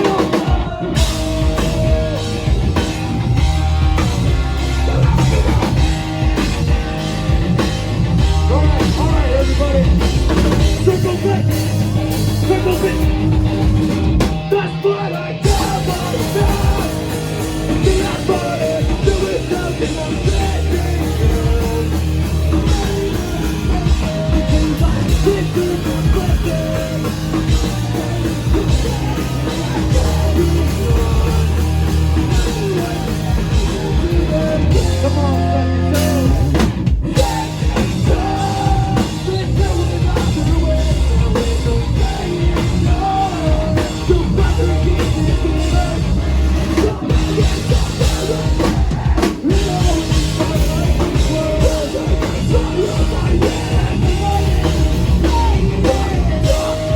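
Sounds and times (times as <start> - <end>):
live rock band playing: 0.0 - 56.9
pounding drum kit: 0.0 - 56.9.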